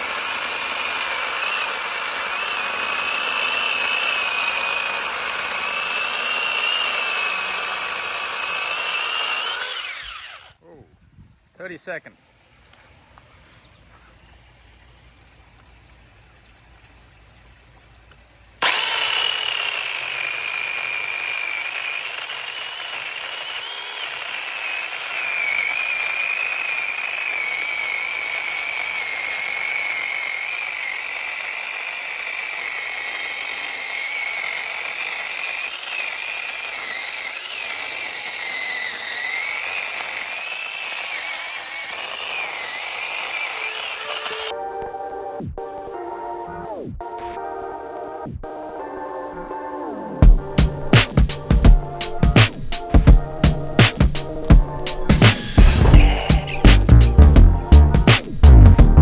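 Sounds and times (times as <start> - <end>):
electric chainsaw cutting a branch: 0.0 - 10.6, 18.6 - 44.6, 50.2 - 59.0.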